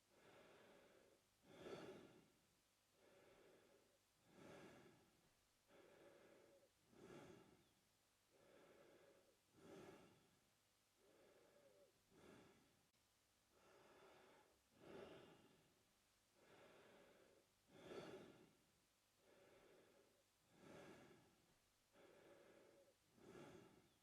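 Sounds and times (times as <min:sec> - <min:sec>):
man breathing through mouth: 0:00.1 - 0:02.3, 0:03.0 - 0:05.1, 0:05.7 - 0:07.7, 0:08.3 - 0:10.3, 0:11.0 - 0:12.7, 0:13.6 - 0:15.6, 0:16.4 - 0:18.6, 0:19.2 - 0:21.3, 0:21.9 - 0:24.0.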